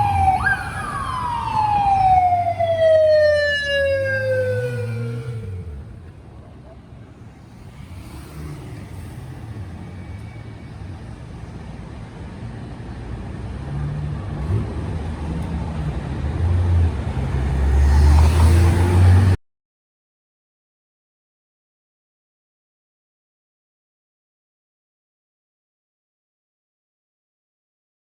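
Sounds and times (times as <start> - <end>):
vehicle engine droning: 0.0 - 19.4.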